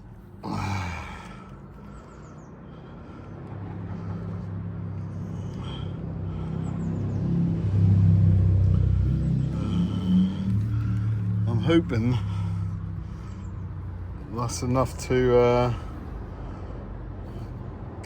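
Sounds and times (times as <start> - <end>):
vehicle engine humming: 0.0 - 18.0.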